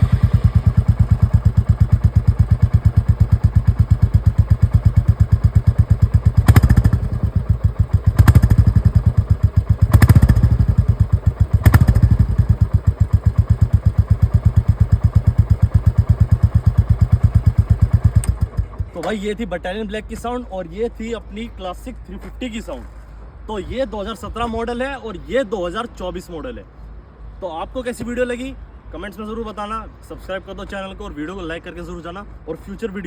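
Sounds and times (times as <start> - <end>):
engine revving: 0.0 - 19.0
motorcycle engine idling: 0.0 - 19.2.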